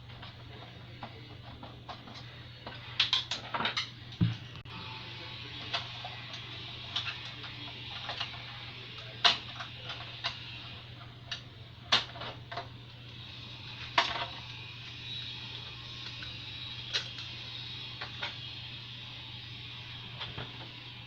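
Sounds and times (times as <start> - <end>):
hands clicking on plastic parts: 0.1 - 4.4.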